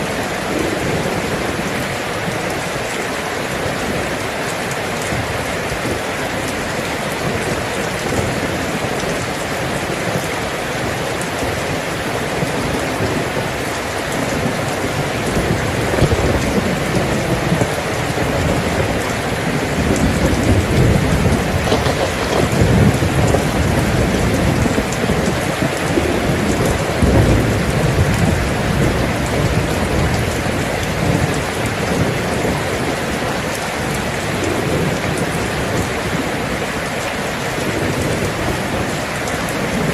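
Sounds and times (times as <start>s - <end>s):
steady rain falling: 0.0s - 39.9s
thunder rumbling: 10.9s - 33.2s.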